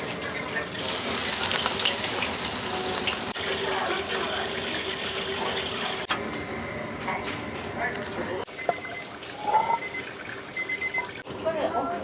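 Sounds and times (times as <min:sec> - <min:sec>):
food sizzling in hot oil: 0:00.8 - 0:06.0.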